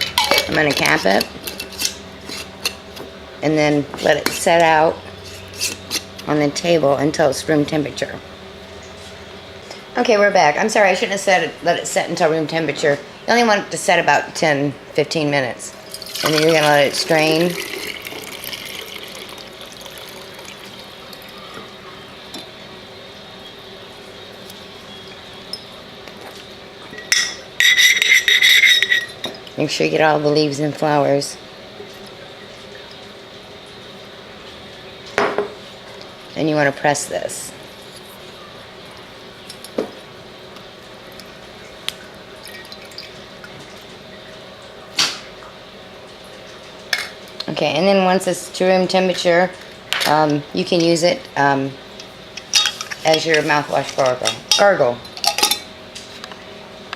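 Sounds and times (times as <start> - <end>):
liquid pouring into glass jar: 15.9 - 21.3
glass clink: 27.0 - 29.3.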